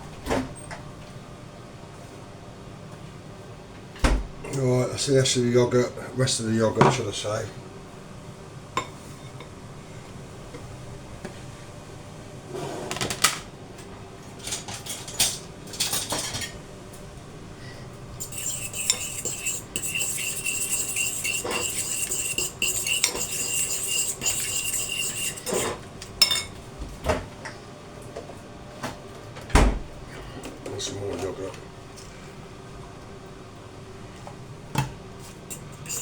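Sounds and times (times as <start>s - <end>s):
spoon stirring and scraping bowl: 17.7s - 26.6s, 35.2s - 36.0s
spoon clinking against bowl: 18.2s - 26.5s, 35.5s - 36.0s.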